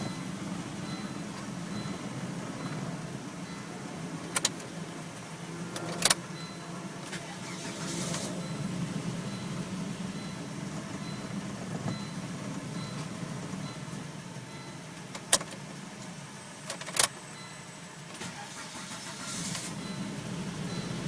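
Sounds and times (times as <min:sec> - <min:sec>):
faint high beeps: 0:00.0 - 0:04.0, 0:06.3 - 0:15.0, 0:16.4 - 0:17.9, 0:19.8 - 0:21.0
steady low hum: 0:00.0 - 0:16.6.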